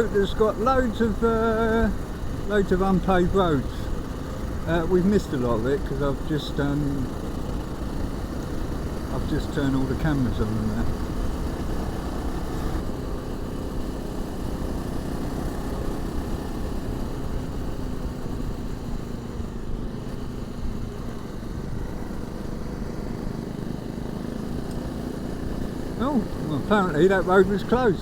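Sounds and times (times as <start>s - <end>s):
riding noise: 0.0s - 11.4s, 25.8s - 28.0s
motorcycle engine rumble: 0.0s - 28.0s.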